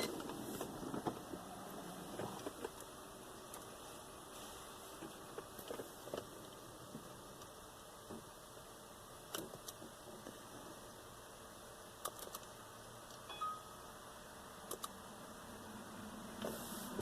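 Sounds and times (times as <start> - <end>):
short electronic beep: 13.3 - 13.8.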